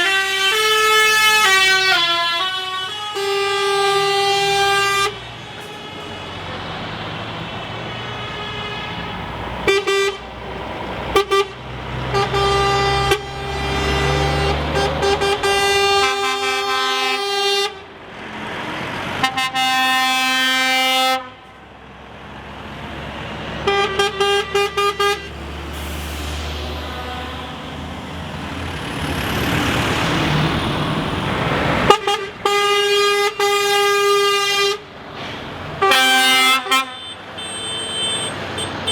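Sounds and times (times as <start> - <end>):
truck air horns blasting: 0.0 - 6.9, 7.6 - 17.9, 19.1 - 21.6, 23.6 - 27.9, 31.8 - 38.9
diesel engine rumble: 0.0 - 19.5, 20.8 - 38.9
truck passing close: 0.0 - 38.9.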